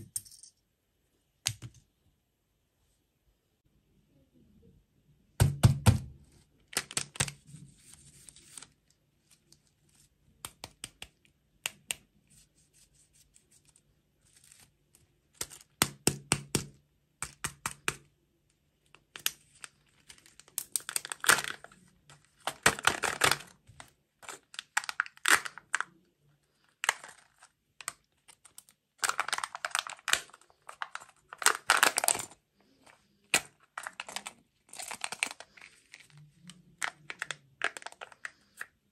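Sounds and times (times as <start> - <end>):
plastic packaging crinkling: 6.6 - 8.8, 19.0 - 26.0, 26.6 - 38.7.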